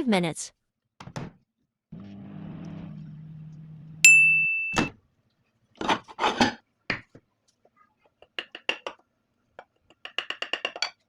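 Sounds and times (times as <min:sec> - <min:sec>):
microwave oven humming: 0:01.9 - 0:05.0
microwave ding: 0:04.0 - 0:04.9.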